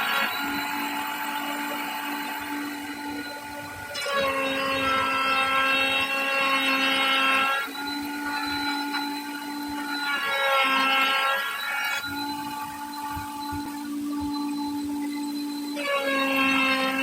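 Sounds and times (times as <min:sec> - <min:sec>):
power tool motor whining: 0:00.0 - 0:17.0.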